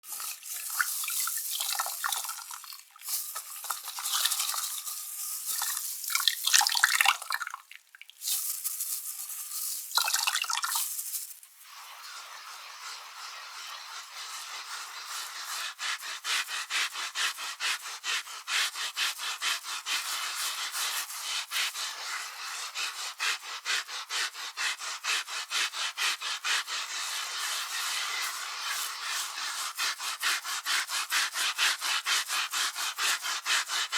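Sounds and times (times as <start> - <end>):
carpet being scrubbed: 10.7 - 33.9.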